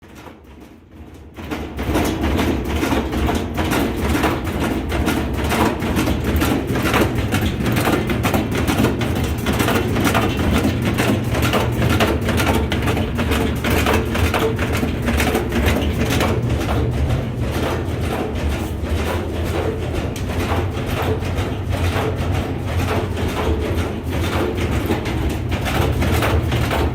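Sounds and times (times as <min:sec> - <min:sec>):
washing machine spin drone: 0:00.0 - 0:26.9
washing machine tub knocking: 0:00.1 - 0:26.9.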